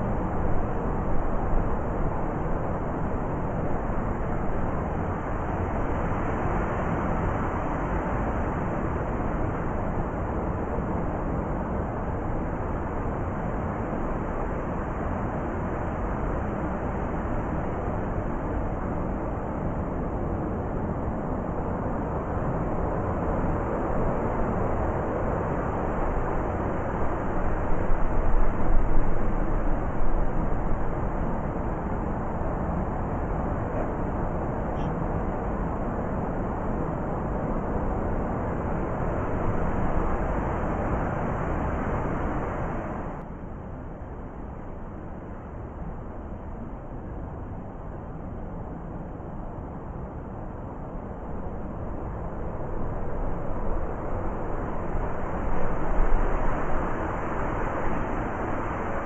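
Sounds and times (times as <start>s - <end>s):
blizzard wind blowing: 0.0s - 59.0s.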